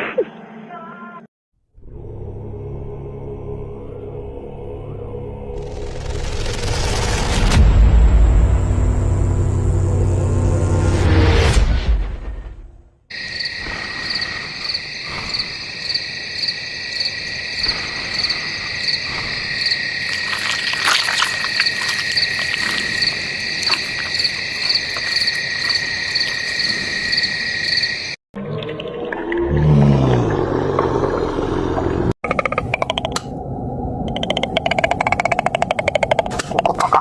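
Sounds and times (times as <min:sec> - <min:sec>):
crickets chirping: 0:13.1 - 0:28.2.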